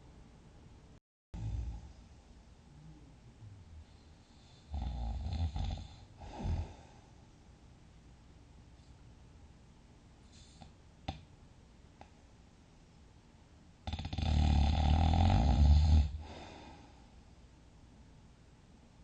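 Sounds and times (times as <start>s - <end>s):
soft breathing: 1.4s - 4.8s, 5.8s - 7.4s, 10.2s - 10.8s, 16.1s - 17.4s
person snoring loudly: 4.4s - 6.8s, 13.9s - 16.4s.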